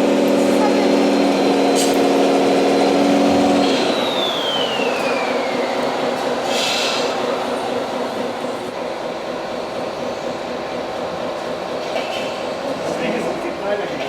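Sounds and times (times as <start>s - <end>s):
electric motor whine spinning down: 0.0s - 6.5s
engine-like drone: 0.0s - 13.4s
short hisses: 6.5s - 7.1s.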